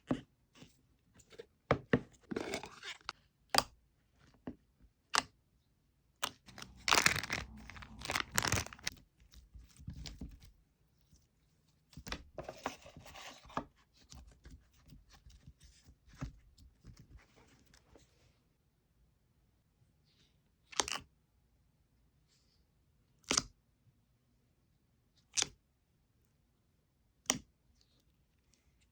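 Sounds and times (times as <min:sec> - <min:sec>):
slime crackling as stretched: 0:06.5 - 0:08.9.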